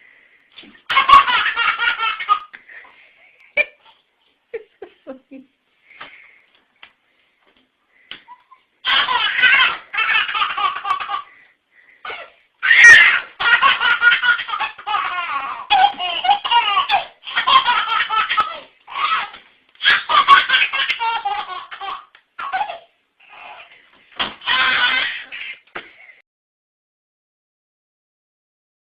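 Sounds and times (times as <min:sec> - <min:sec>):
baby laughing: 0:00.6 - 0:02.8, 0:08.2 - 0:25.9.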